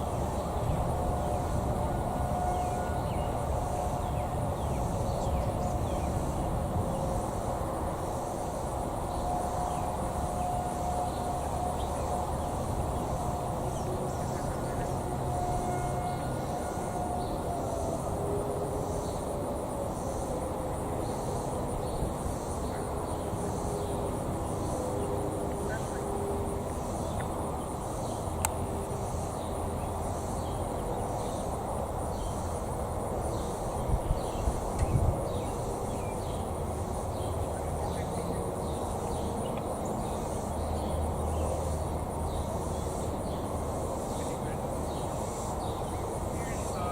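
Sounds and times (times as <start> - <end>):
insects buzzing: 0.0 - 46.9
low background noise: 0.0 - 46.9.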